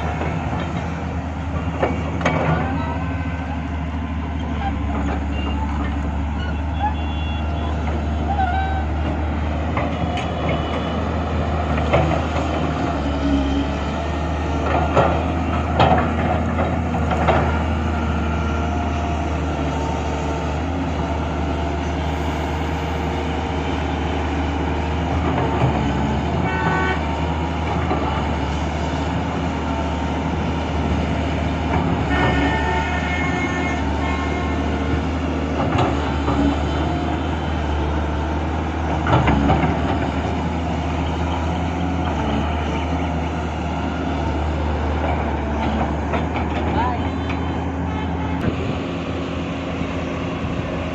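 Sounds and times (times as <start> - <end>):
heavy diesel engine droning: 0.0 - 50.9
metal clanks and knocks: 1.6 - 2.8, 14.6 - 17.6.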